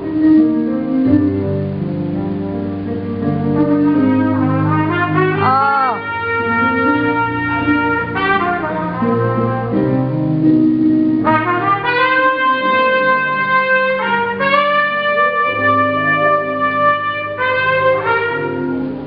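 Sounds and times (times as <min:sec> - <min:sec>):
loud backing song: 0:00.0 - 0:19.0
brass horn playing long notes: 0:03.5 - 0:10.5, 0:11.2 - 0:19.0.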